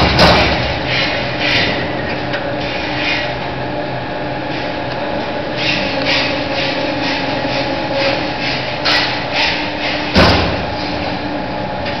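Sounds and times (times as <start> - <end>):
punch press machine hum: 0.0 - 12.0
loud heavy thump: 10.1 - 10.7.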